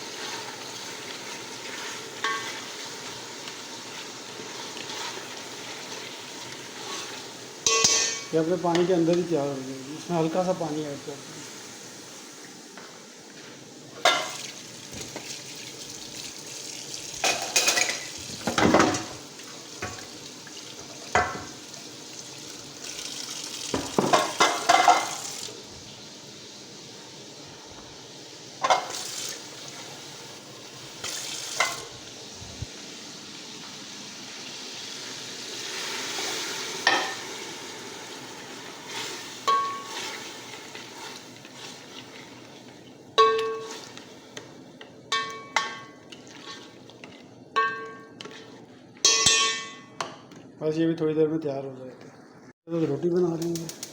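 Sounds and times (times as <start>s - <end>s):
steady sizzle: 0.0s - 53.9s
spoon stirring in metal pot: 1.6s - 2.8s, 6.8s - 8.9s, 43.2s - 50.4s
spoon clinking against pot: 7.6s - 8.3s, 39.4s - 40.0s, 43.2s - 43.8s, 45.1s - 46.0s, 47.6s - 48.4s, 49.0s - 50.1s.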